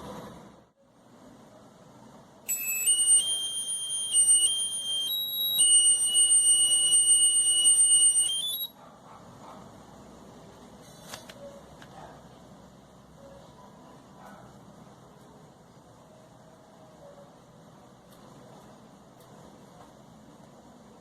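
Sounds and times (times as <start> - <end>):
drone electronic beeper tones: 2.5 - 8.7.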